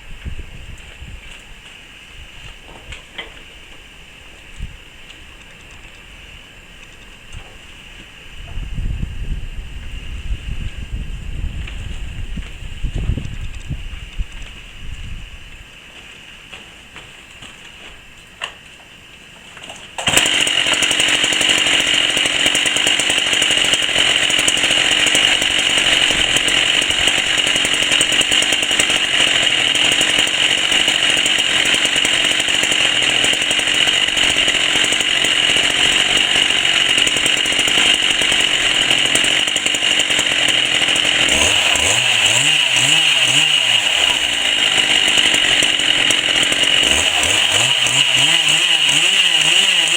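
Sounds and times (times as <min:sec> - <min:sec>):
chainsaw running: 0:20.0 - 0:49.9.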